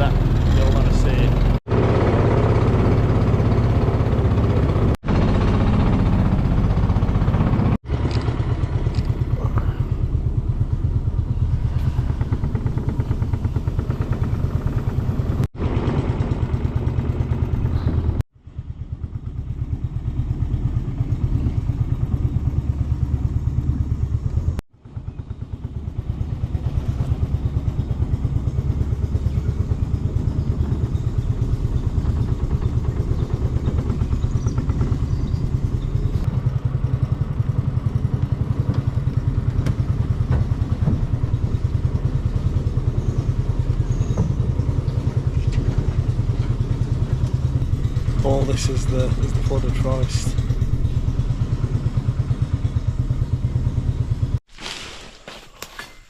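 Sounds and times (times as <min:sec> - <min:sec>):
outboard motor running: 0:00.0 - 0:54.4.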